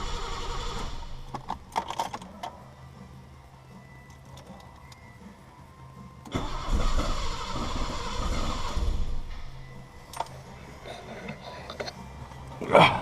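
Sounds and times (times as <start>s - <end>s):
car engine cranking on starter: 0.0s - 1.9s, 6.2s - 10.3s.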